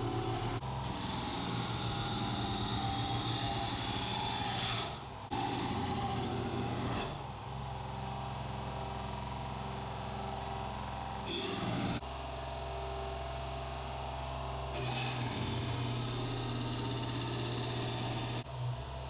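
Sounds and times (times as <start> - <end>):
belt grinder motor hum: 0.0 - 7.2, 14.8 - 18.4.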